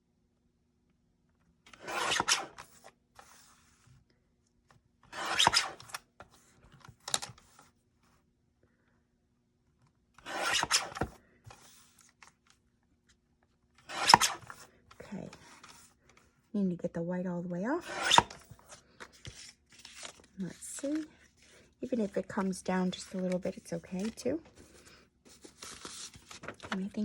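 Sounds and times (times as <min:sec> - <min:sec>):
tool rasping against paper: 0:05.2 - 0:05.9, 0:10.2 - 0:11.7, 0:13.8 - 0:14.7, 0:17.8 - 0:18.4.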